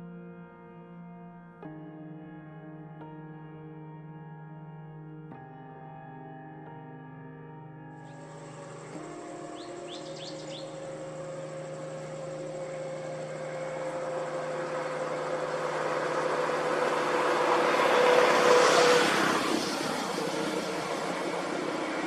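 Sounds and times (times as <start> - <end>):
road vehicle approaching: 8.1 - 22.0.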